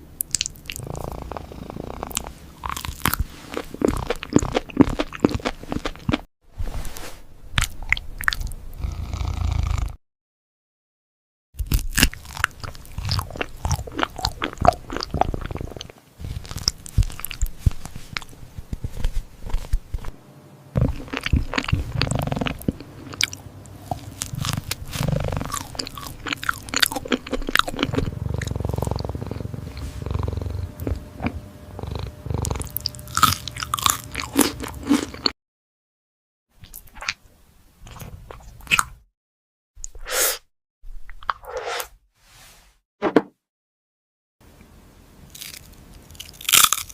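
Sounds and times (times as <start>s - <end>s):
cat chewing and crunching food: 0.3s - 6.3s, 11.7s - 20.2s, 20.8s - 35.3s, 45.3s - 46.9s.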